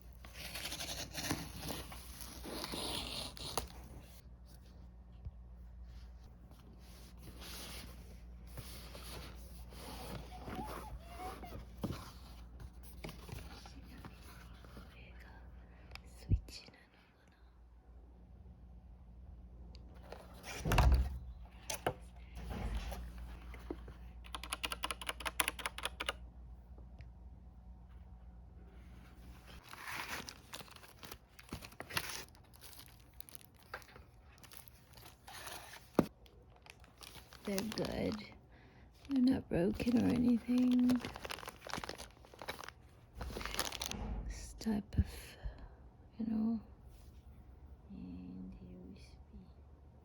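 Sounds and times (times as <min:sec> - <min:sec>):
packaging rustling and scraping: 0:00.2 - 0:04.2, 0:29.2 - 0:38.3, 0:39.0 - 0:44.0.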